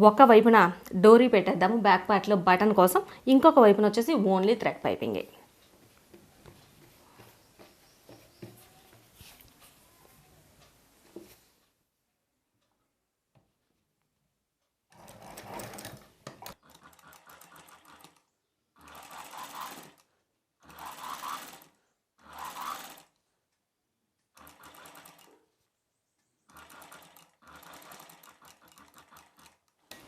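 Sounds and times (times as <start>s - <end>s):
sewing machine stitching: 14.9s - 23.2s, 24.3s - 25.5s, 26.5s - 30.0s.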